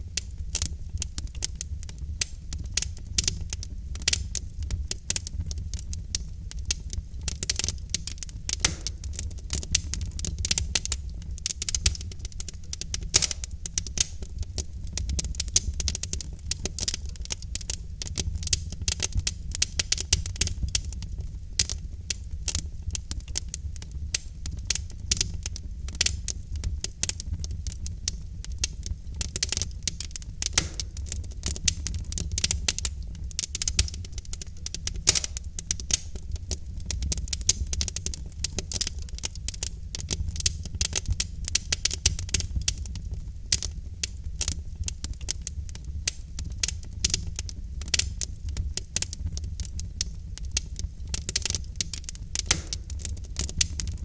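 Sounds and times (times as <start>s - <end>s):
low rumble of flames: 0.0s - 54.0s
logs crackling and popping: 0.1s - 54.0s.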